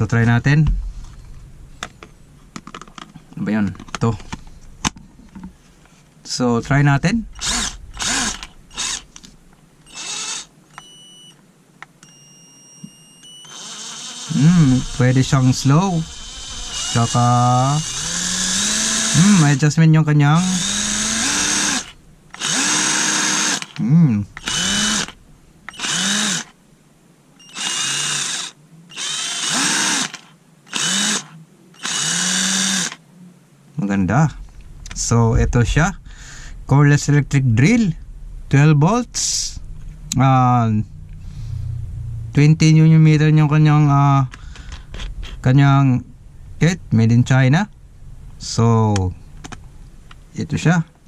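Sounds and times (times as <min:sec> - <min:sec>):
cordless drill whining: 0:07.3 - 0:11.4, 0:12.8 - 0:19.6, 0:20.4 - 0:26.6, 0:27.4 - 0:33.0.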